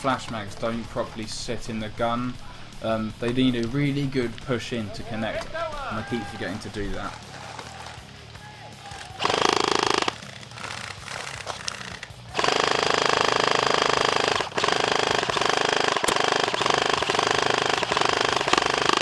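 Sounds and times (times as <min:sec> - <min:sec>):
airsoft rifle firing full auto: 0:08.8 - 0:19.0.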